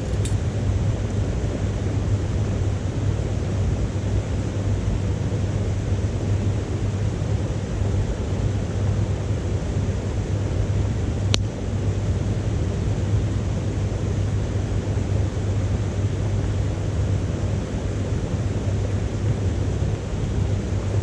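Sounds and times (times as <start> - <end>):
wood fire crackle: 0.0 - 0.6
wood stove low rumble: 0.0 - 11.4.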